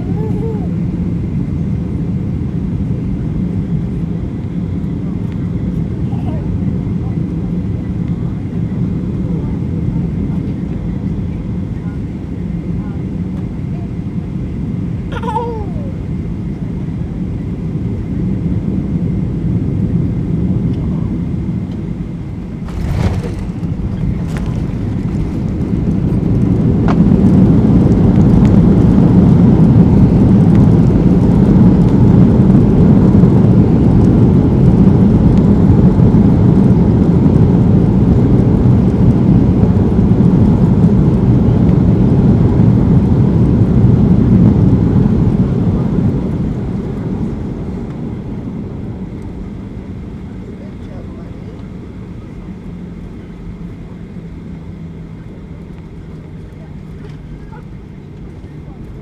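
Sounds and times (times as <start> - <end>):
airplane cabin rumble: 0.0 - 18.8, 20.2 - 59.0
jet engines roaring in reverse thrust: 22.0 - 33.0
wheels thumping on runway: 22.6 - 28.8.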